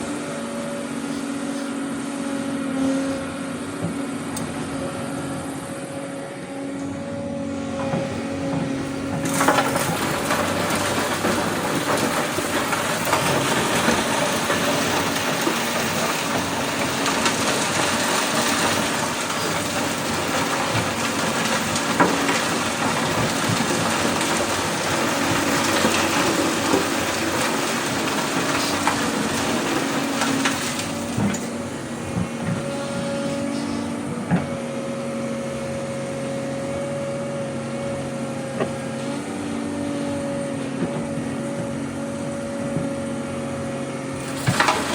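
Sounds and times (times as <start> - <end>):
gravel crunching in excavator bucket: 7.5 - 35.2, 44.1 - 44.9.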